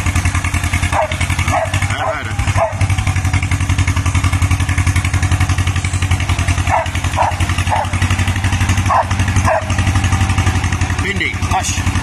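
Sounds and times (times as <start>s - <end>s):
bulldozer engine pulsing: 0.0s - 12.0s
dog yelping: 0.9s - 3.0s, 6.6s - 8.1s, 8.8s - 9.9s.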